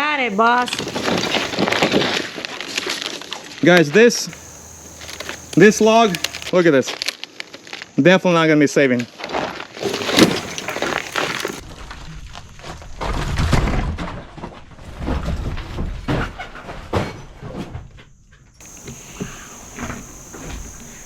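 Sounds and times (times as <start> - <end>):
wood cracking: 0.3 - 1.6, 9.8 - 11.6
wood pieces thudding: 9.8 - 11.6.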